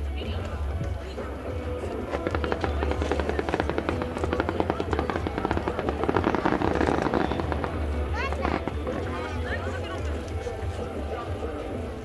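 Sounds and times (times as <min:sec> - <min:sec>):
fireworks popping and crackling: 0:00.0 - 0:12.0.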